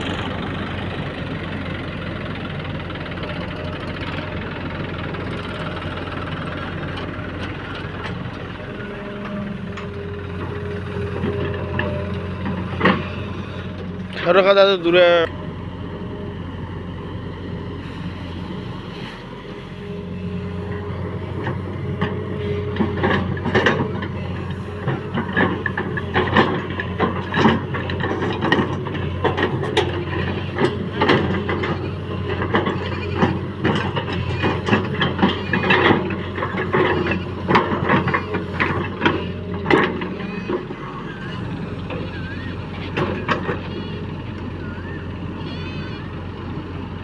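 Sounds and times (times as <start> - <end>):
diesel engine running: 0.0 - 47.0
sharp knocks and clatters: 24.8 - 40.6.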